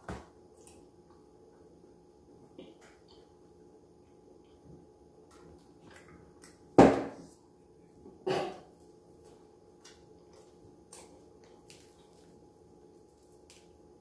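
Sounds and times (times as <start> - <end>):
crunching fried chicken: 8.7 - 14.0.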